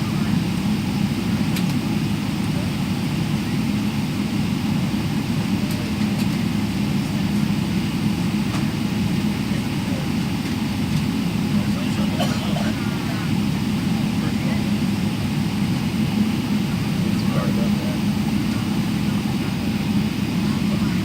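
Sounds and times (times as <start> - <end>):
jet engine roar in cabin: 0.0 - 21.0.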